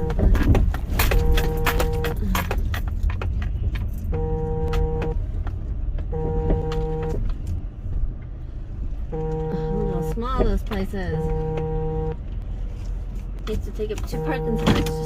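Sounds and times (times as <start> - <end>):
road and engine rumble: 0.0 - 15.0
repeating electronic alert tone: 11.1 - 12.2.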